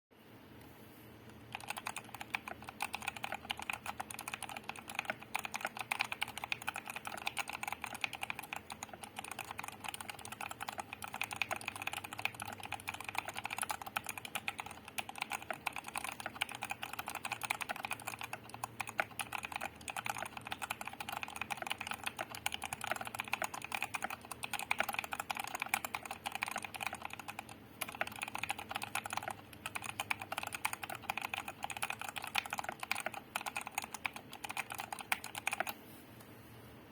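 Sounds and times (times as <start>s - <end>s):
fast mechanical keyboard typing: 1.3s - 35.8s.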